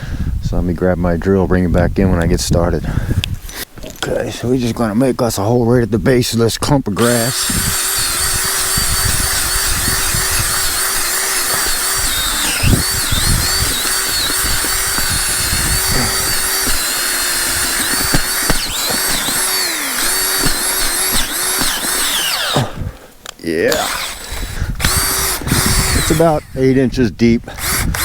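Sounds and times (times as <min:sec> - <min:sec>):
drill bit knocking in soil: 0:06.9 - 0:23.0, 0:23.7 - 0:26.8, 0:27.5 - 0:28.0
power drill boring into ground: 0:07.0 - 0:22.9, 0:23.7 - 0:26.7, 0:27.5 - 0:28.0.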